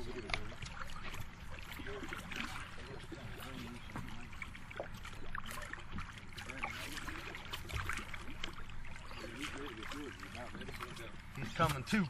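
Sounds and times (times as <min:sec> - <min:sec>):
faint voices: 0:00.0 - 0:12.0
water splashing against boat: 0:00.0 - 0:12.0.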